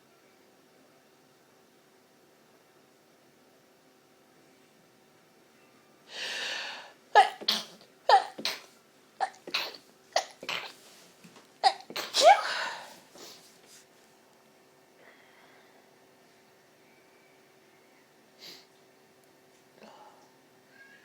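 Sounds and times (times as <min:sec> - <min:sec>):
quick breath in: 0:06.1 - 0:07.0
person sneezing: 0:07.2 - 0:10.8, 0:11.6 - 0:13.4.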